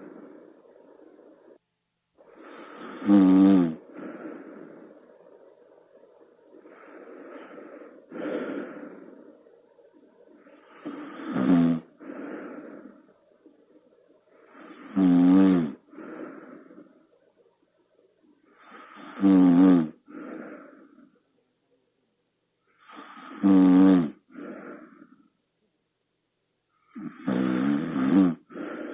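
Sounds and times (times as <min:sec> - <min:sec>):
person snoring: 0:02.3 - 0:04.5, 0:10.5 - 0:12.9, 0:14.5 - 0:16.1, 0:18.6 - 0:20.8, 0:22.8 - 0:25.0, 0:26.8 - 0:28.9.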